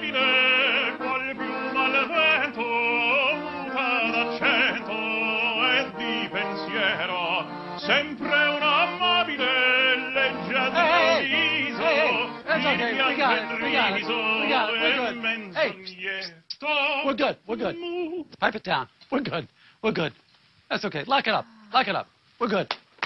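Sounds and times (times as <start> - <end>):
held musical accompaniment: 0.0 - 16.2
operatic singing with vibrato: 0.0 - 18.4.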